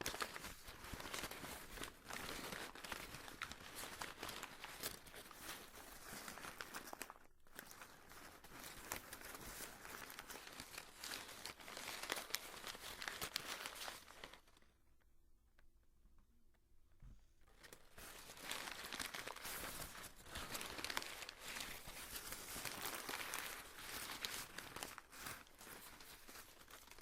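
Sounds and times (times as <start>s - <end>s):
paper tearing and crinkling: 17.7s - 27.0s.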